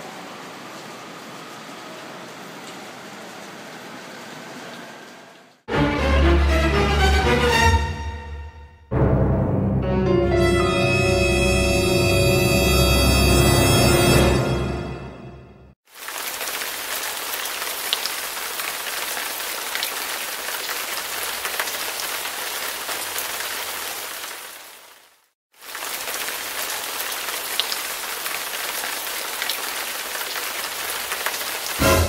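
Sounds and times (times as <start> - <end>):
rain hissing: 15.9 - 32.0.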